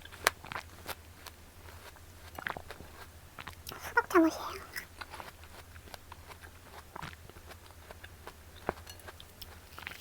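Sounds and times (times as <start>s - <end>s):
soft clicks of eating watermelon: 4.6s - 10.0s.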